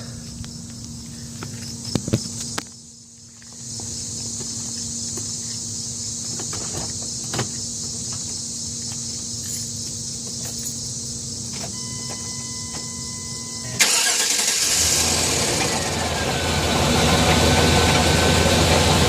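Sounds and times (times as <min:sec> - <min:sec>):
engine running: 0:11.5 - 0:19.0
car engine cranking and starting: 0:13.5 - 0:19.0.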